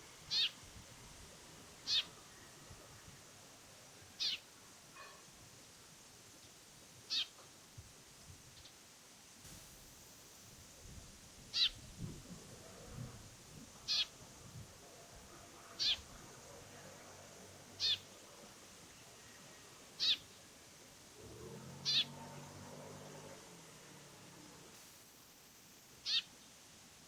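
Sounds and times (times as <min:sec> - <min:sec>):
bird high wavering call: 0:00.3 - 0:00.6, 0:01.9 - 0:02.1, 0:11.5 - 0:11.8, 0:17.8 - 0:18.1, 0:20.0 - 0:20.3, 0:21.8 - 0:22.1, 0:26.0 - 0:26.3.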